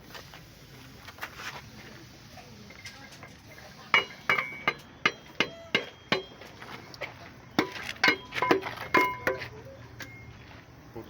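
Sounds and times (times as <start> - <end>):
hammer clanging on metal: 4.0 - 6.5, 7.6 - 10.2.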